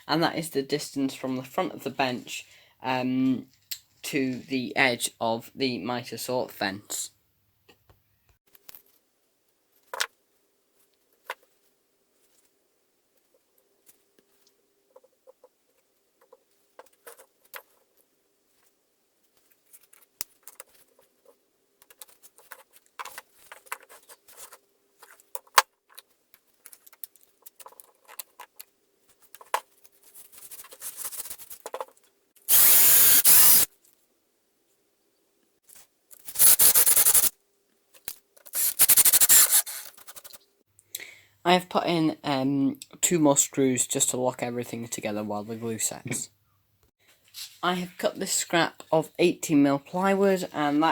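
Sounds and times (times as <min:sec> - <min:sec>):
cordless drill driving screws: 0:32.5 - 0:33.7, 0:36.4 - 0:37.3, 0:38.6 - 0:39.8.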